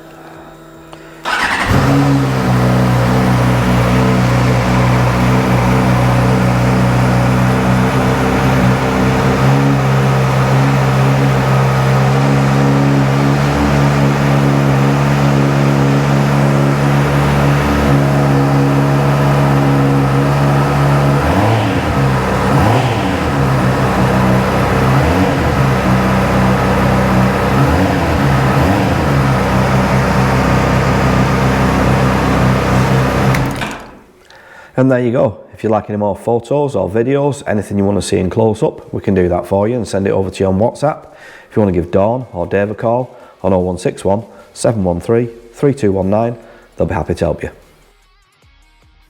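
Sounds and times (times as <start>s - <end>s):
motorcycle engine idling and revving: 1.2s - 34.1s.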